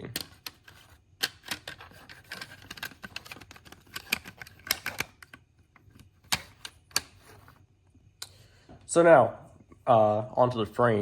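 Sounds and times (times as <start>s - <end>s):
plastic parts clicking: 0.0s - 7.6s.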